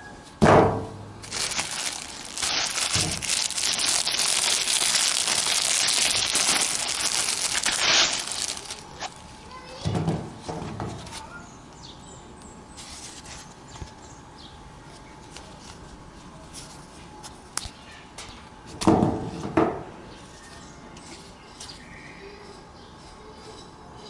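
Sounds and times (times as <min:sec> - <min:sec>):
packaging clicks and rustles: 0:01.2 - 0:09.2.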